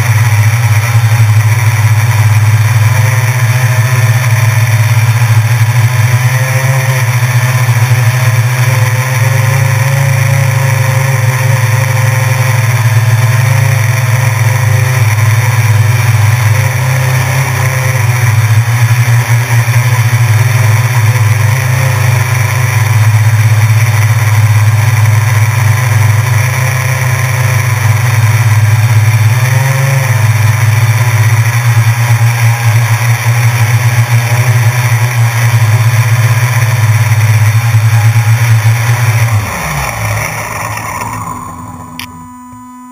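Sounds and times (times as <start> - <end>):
drone propellers buzzing: 0.0 - 42.9.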